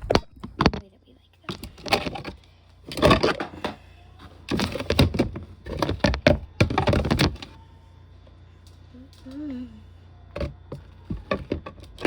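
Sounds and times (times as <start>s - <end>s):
plastic bins clattering: 1.5s - 7.6s, 10.4s - 12.0s.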